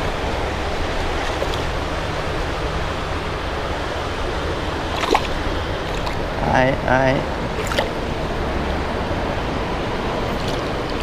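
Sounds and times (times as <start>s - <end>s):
creek water rushing: 0.0s - 11.0s.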